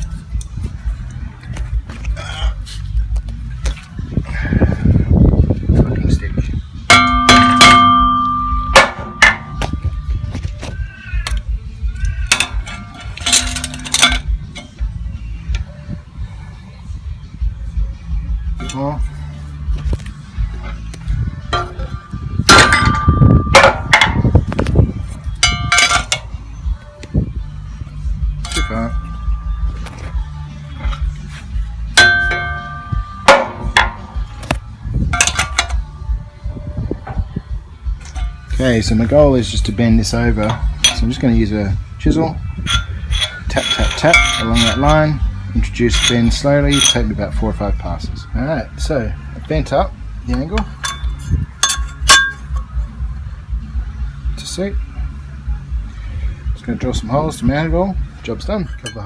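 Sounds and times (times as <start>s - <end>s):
hammer clanging on metal: 6.9s - 9.9s, 28.4s - 29.8s, 32.0s - 35.8s, 40.3s - 41.3s, 42.7s - 47.2s, 50.6s - 52.7s.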